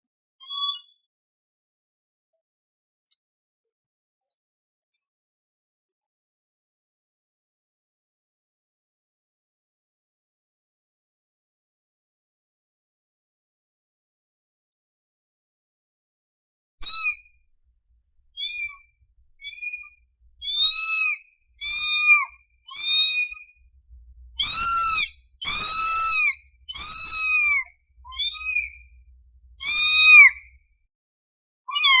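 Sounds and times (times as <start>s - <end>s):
kitten meowing: 0.4s - 0.9s, 16.8s - 17.2s, 18.4s - 18.8s, 19.4s - 23.5s, 24.4s - 28.9s, 29.6s - 30.5s, 31.7s - 32.0s.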